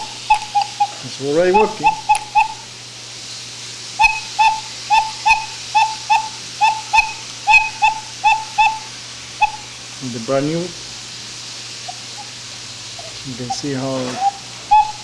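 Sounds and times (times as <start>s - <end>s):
cuckoo clock whistle hooting: 0.0s - 2.7s, 4.0s - 9.7s, 13.4s - 15.0s.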